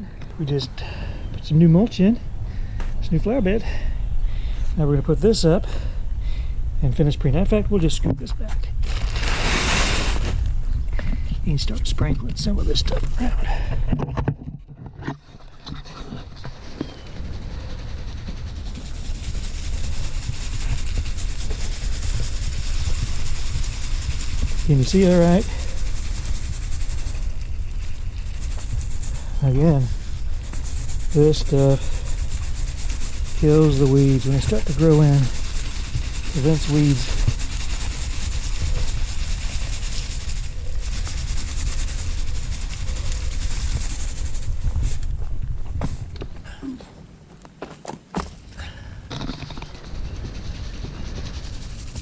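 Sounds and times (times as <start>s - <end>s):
steady low rumble: 0.0s - 14.0s, 16.0s - 46.8s
granules rattling in shaker: 16.5s - 45.1s, 49.1s - 52.0s.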